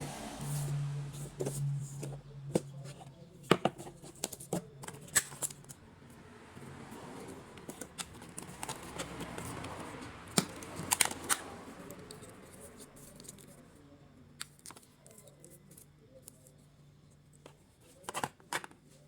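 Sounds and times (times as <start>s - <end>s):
packaging rustling and scraping: 7.5s - 13.6s.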